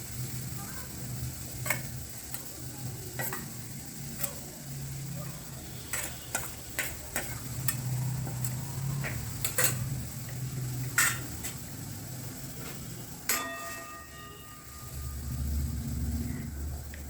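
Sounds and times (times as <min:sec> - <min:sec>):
utensil clinking against a pot: 0:01.5 - 0:04.5, 0:05.7 - 0:10.0, 0:10.9 - 0:11.5, 0:13.2 - 0:14.9.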